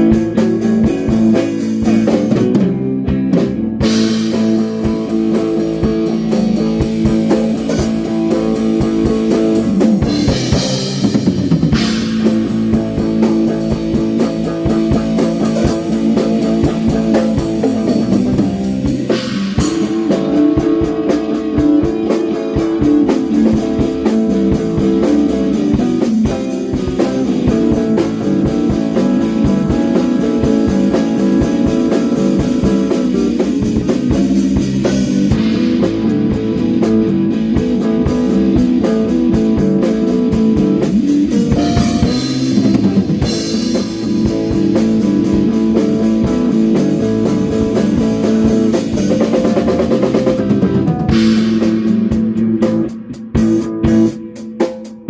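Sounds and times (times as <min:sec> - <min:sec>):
blues-rock band playing: 0:00.0 - 0:55.0.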